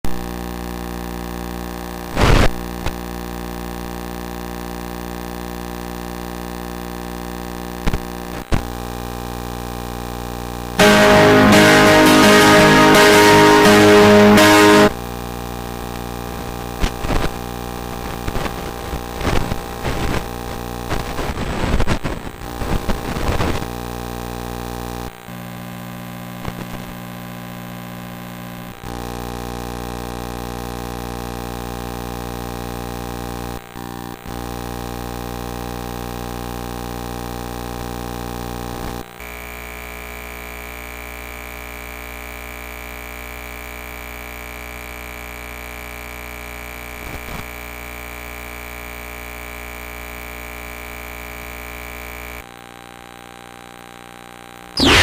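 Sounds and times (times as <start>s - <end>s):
thin high tone: 10.8s - 15.0s, 54.8s - 55.0s.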